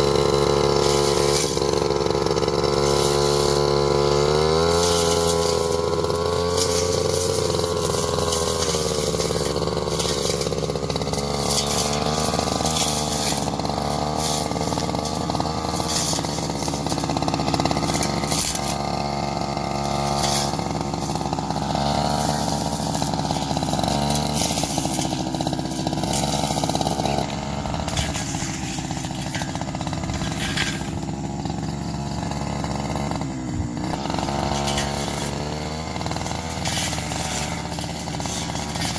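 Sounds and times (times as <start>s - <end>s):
grass cutter engine running: 0.0s - 38.9s.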